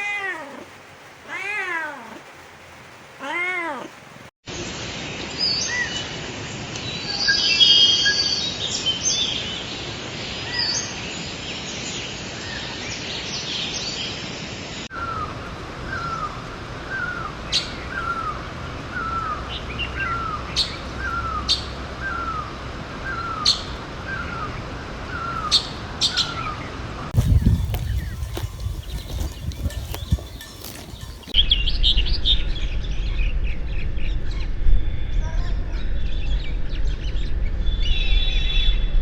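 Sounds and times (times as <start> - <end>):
steady outdoor hiss: 0.0 - 34.2
birds chirping and whistling: 27.2 - 33.0.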